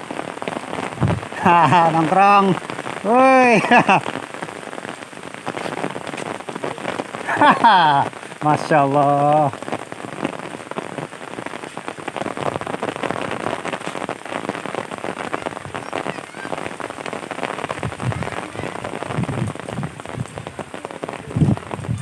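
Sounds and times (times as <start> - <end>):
heavy rain falling: 0.0 - 22.0.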